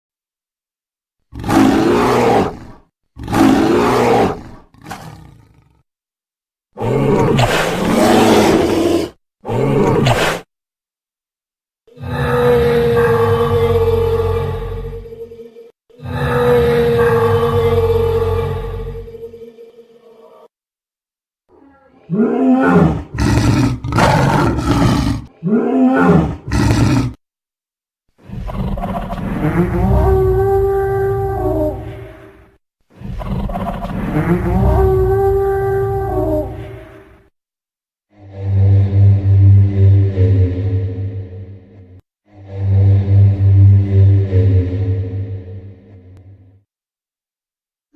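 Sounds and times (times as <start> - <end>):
dinosaur roars: 1.3 - 5.8, 6.8 - 10.2, 11.9 - 15.4, 16.0 - 20.5, 21.7 - 27.2, 28.2 - 32.4, 33.0 - 37.3, 38.2 - 46.3.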